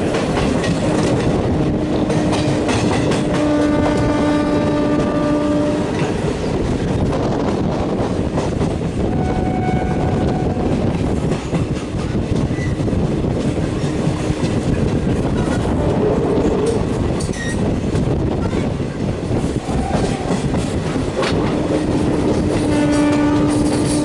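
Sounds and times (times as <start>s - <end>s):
wheels clattering over rail joints: 0.0s - 3.8s
train coaches rumbling: 0.0s - 24.0s.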